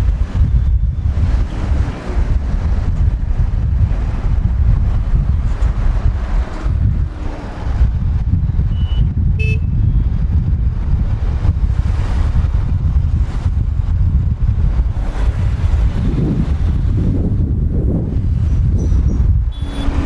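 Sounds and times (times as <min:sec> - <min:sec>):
traffic engines rumbling: 0:00.0 - 0:20.0
wind on microphone: 0:00.0 - 0:20.0
vehicle horn toot: 0:08.7 - 0:10.1, 0:19.5 - 0:20.0.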